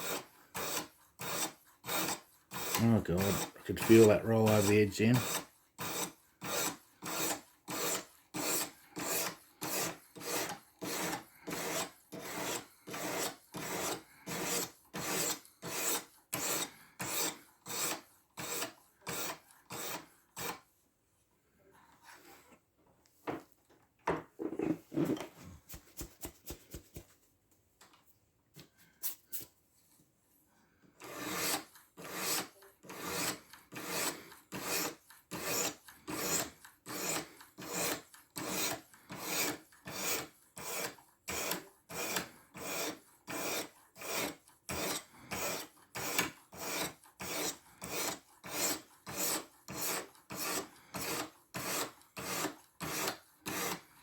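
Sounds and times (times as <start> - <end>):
sharpening stone rasping on knife: 0.0 - 20.6, 31.0 - 53.8.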